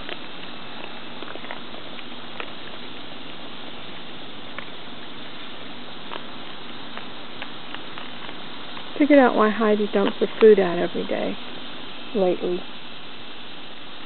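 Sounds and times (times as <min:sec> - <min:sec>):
dry kibble clicking: 0:00.0 - 0:04.8, 0:06.1 - 0:08.9
steady background hiss: 0:00.0 - 0:14.0.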